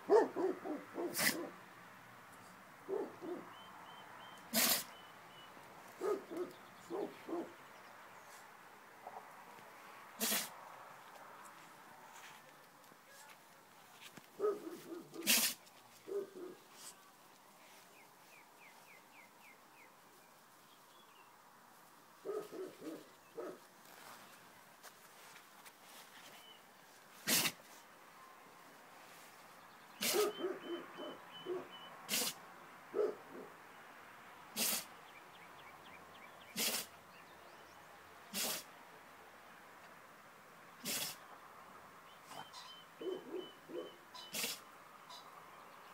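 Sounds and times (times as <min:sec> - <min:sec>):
dog sneezing: 0:01.1 - 0:01.5, 0:04.5 - 0:04.9, 0:10.2 - 0:10.6, 0:15.2 - 0:15.6, 0:27.2 - 0:27.6, 0:30.0 - 0:30.3, 0:32.1 - 0:32.4, 0:34.5 - 0:34.9, 0:36.5 - 0:36.9, 0:38.3 - 0:38.7, 0:40.8 - 0:41.2, 0:44.2 - 0:44.7
bird chirping: 0:02.9 - 0:08.4, 0:29.7 - 0:32.0, 0:42.0 - 0:45.9.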